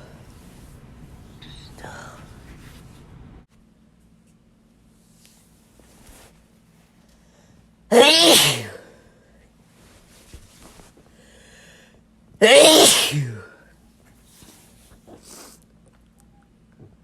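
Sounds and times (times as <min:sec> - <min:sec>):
person sneezing: 0:07.9 - 0:08.9, 0:12.4 - 0:13.6.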